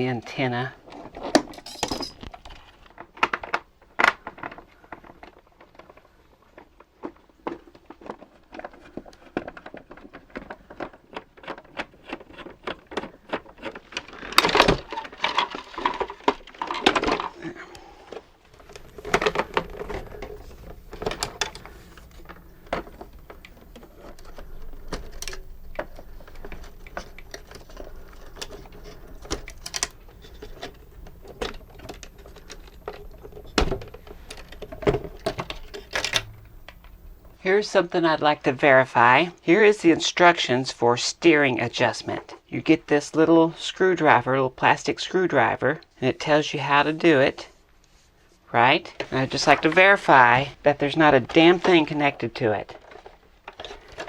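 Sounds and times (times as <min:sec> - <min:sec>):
plastic parts clicking and rattling: 0:00.6 - 0:37.4, 0:49.0 - 0:54.0.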